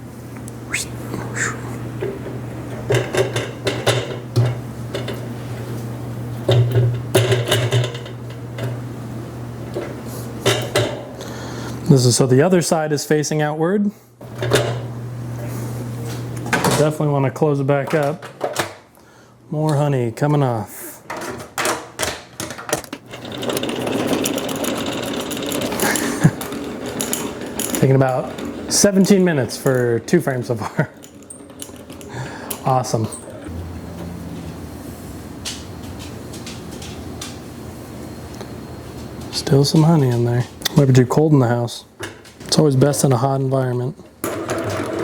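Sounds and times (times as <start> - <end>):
steady low hum: 0.0 - 12.0
honey extractor gears clattering: 2.0 - 11.3, 14.2 - 14.9, 22.8 - 33.5, 44.2 - 45.0
wooden frames clattering in metal: 21.2 - 33.5.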